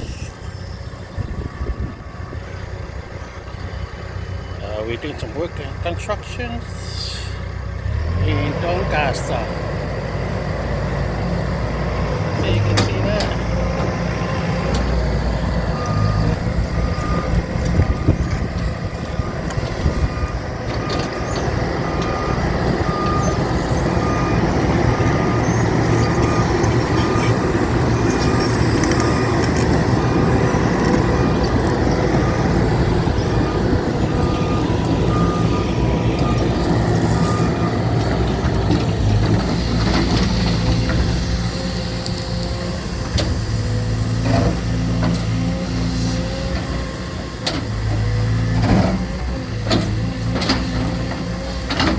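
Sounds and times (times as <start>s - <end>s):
heavy vehicle engine running: 0.0s - 51.9s
reversing alarm beeping: 15.5s - 38.2s.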